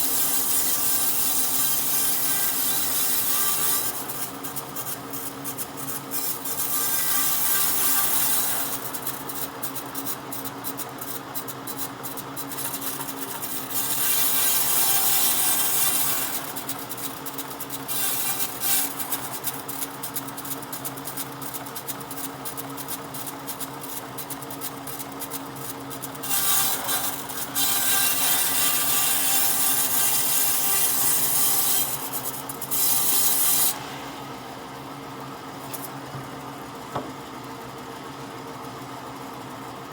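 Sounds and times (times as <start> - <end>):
tool rasping across wood: 26.2 - 33.8.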